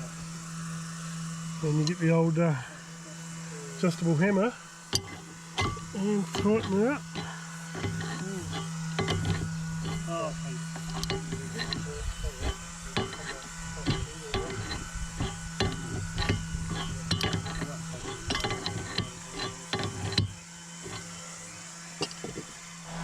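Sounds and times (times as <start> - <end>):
steady low hum: 0.0 - 23.0
tools clicking on metal: 4.9 - 10.1, 10.8 - 21.1.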